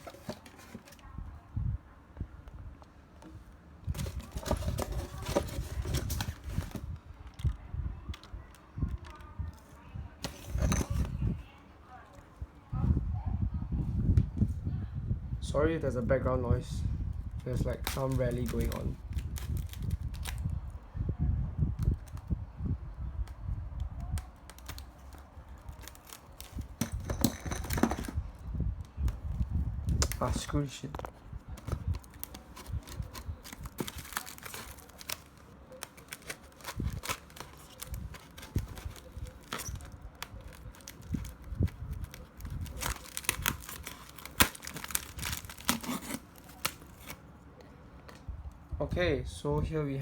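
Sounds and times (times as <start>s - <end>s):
packaging crinkling and clicking: 3.9s - 9.2s, 24.2s - 28.2s, 29.9s - 47.2s.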